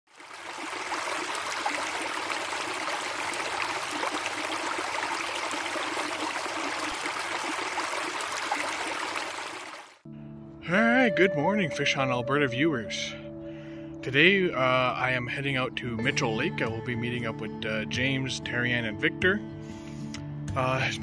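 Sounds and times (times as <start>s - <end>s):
stream water flowing: 0.1s - 10.0s.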